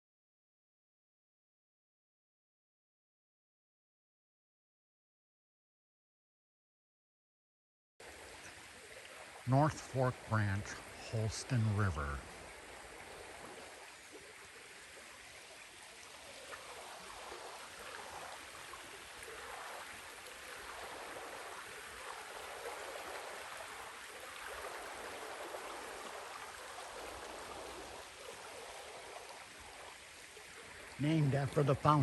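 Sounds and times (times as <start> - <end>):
river water rushing: 8.0 - 32.0.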